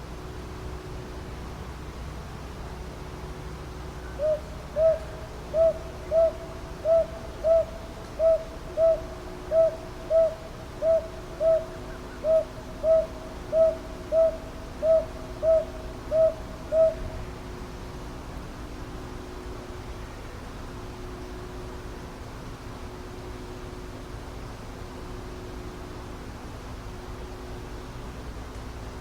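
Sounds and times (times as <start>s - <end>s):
faint low hum: 0.0s - 29.0s
owl hooting: 4.0s - 17.2s.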